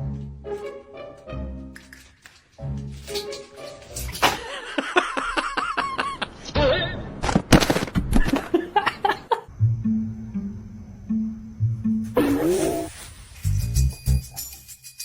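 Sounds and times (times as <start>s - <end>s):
person laughing: 4.4s - 6.4s.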